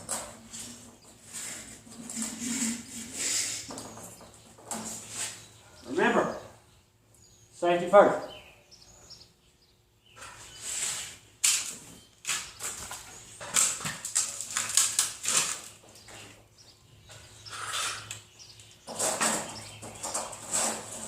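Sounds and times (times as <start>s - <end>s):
sheet metal being cut: 1.3s - 3.6s, 20.1s - 21.0s.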